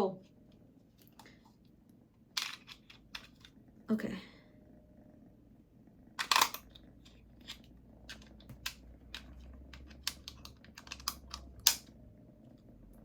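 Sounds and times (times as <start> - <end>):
plastic keyboard clicks and taps: 8.1 - 11.8.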